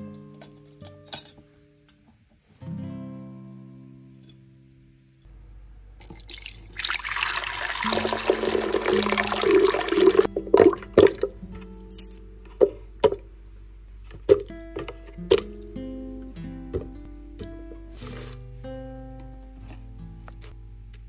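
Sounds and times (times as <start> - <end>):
liquid pouring into container: 6.0 - 11.4.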